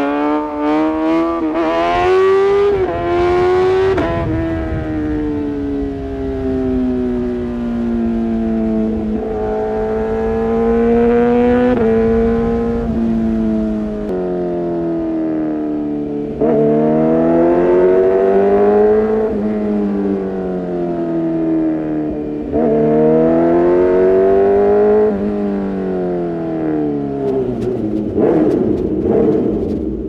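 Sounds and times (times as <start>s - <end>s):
motorcycle engine revving: 0.0s - 30.0s
exhaust pops: 27.2s - 30.0s.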